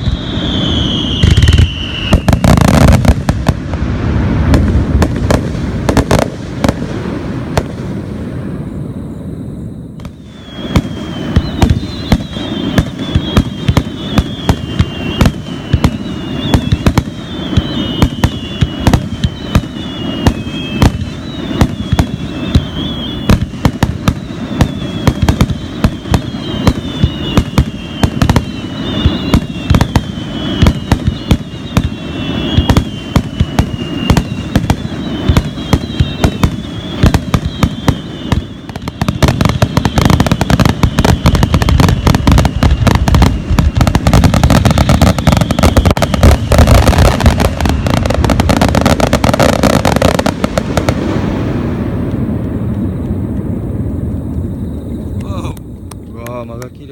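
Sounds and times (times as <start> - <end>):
whistling shells falling pitch: 0.0 - 2.8, 10.0 - 50.3
firework bangs and booms: 0.0 - 54.9.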